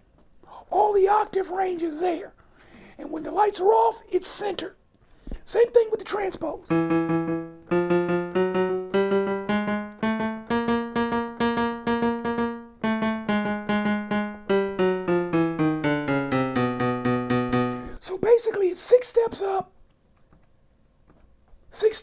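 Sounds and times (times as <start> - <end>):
piano two-note figure: 6.7 - 18.0.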